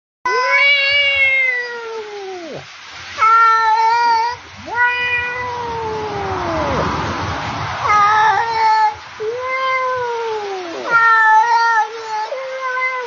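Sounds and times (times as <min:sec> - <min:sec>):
man imitating cat meows: 0:03.2 - 0:06.9.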